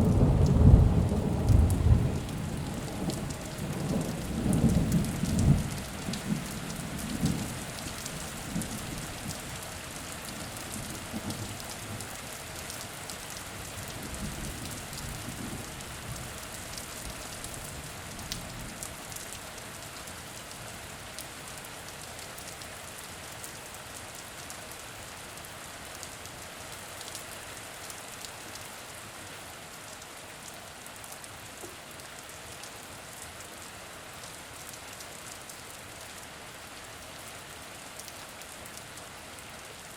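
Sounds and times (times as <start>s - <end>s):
low rumble of thunder: 0.0s - 9.4s
steady rain falling: 0.0s - 39.9s.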